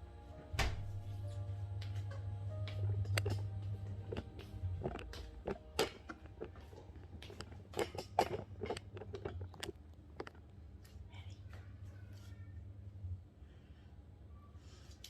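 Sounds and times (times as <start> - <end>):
steady low hum: 0.0 - 11.9
small clicks and knocks: 2.7 - 3.4, 4.0 - 10.5.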